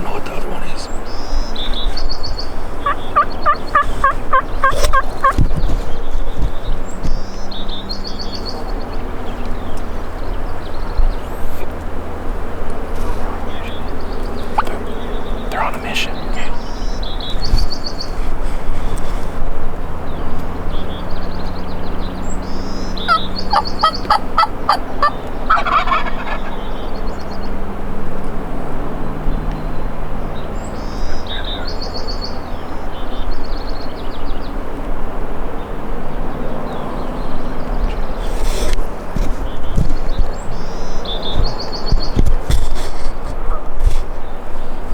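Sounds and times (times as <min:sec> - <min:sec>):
small birds chirping: 0:00.0 - 0:27.8, 0:28.7 - 0:34.7, 0:35.6 - 0:44.9
turkey gobbling: 0:02.7 - 0:05.4, 0:13.0 - 0:15.0, 0:23.1 - 0:26.6.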